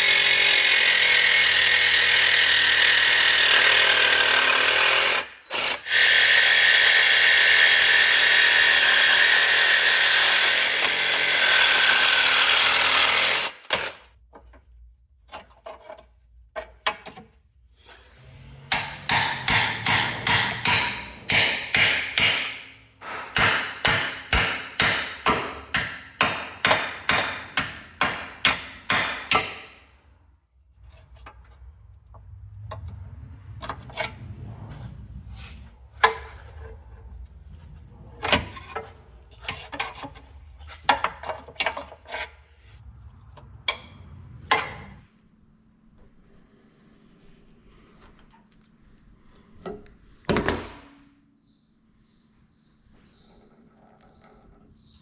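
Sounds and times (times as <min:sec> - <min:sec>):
power tool running: 0:00.0 - 0:14.0
hammer blows: 0:18.2 - 0:30.0.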